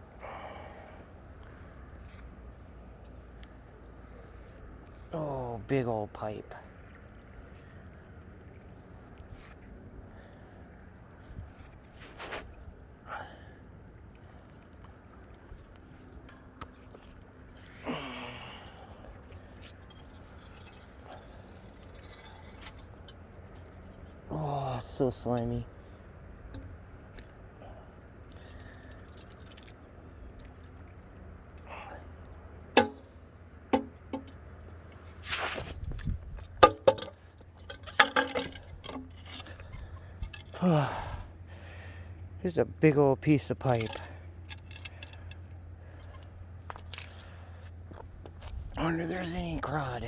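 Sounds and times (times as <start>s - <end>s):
scraping rustle: 11.6s - 12.6s, 35.0s - 36.5s
metal pipe knocking and clinking: 32.8s - 33.1s, 33.8s - 34.4s, 36.4s - 40.6s
wind rumble on microphone: 35.6s - 36.6s, 48.4s - 48.8s.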